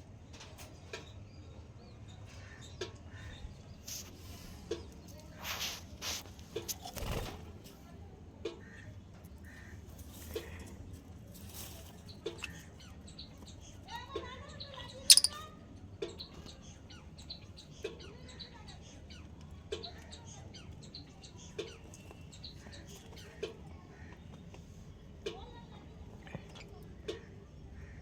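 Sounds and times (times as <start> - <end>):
birds chirping: 8.6 - 28.0.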